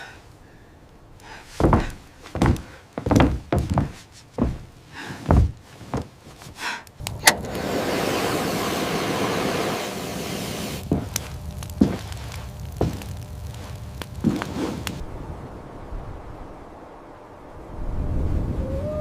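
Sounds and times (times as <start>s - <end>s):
heavy thuds: 1.6s - 7.6s, 10.7s - 15.0s
steady rushing noise: 7.0s - 17.9s.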